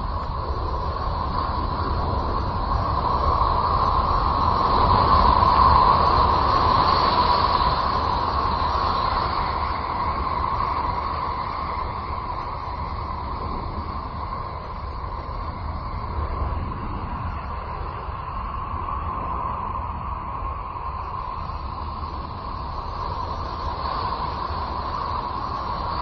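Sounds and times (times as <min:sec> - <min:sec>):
hazy whistling tone: 0:00.0 - 0:26.0
steady rushing rumble: 0:00.0 - 0:26.0.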